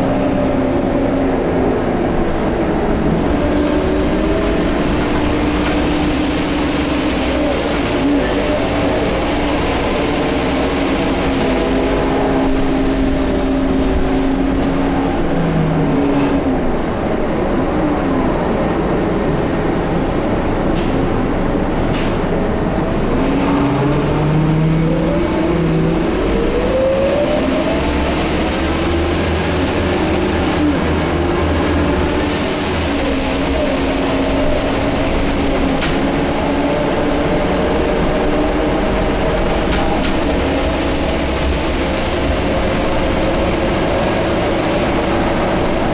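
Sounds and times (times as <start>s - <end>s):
bus engine drone: 0.0s - 45.9s
bus turbo whistle: 3.0s - 15.9s, 23.7s - 45.9s
low gliding mechanical whines: 19.7s - 45.9s.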